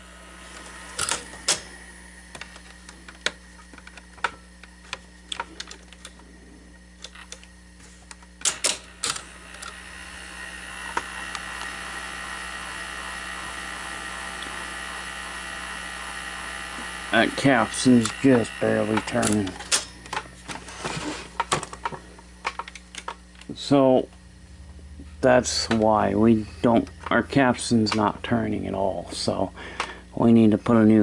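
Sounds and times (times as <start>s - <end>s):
tape deck whirring: 0.0s - 31.0s
tape mechanism clicks and clacks: 1.0s - 1.7s, 8.1s - 9.9s, 13.6s - 20.3s, 26.6s - 28.3s.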